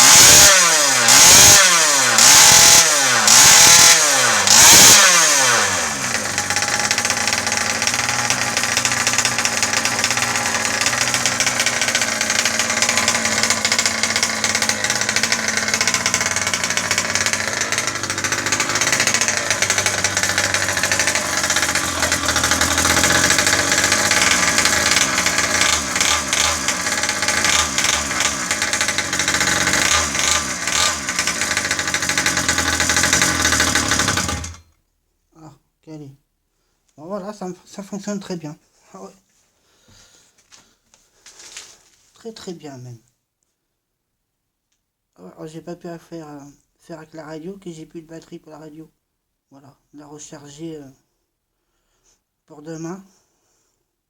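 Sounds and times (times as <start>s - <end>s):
small two-stroke engine revving and idling: 0.0s - 34.7s.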